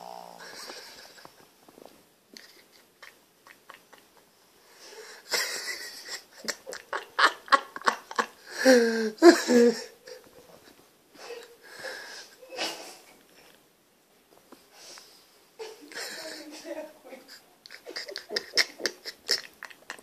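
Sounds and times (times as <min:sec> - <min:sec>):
dog snoring and snuffling: 0:00.0 - 0:00.9.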